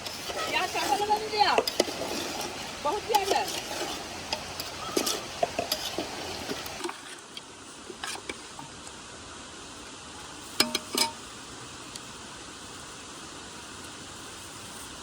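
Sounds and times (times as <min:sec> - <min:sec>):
utensil stirring a pot: 0:00.0 - 0:08.8, 0:10.3 - 0:11.2
faint hiss: 0:00.0 - 0:15.0.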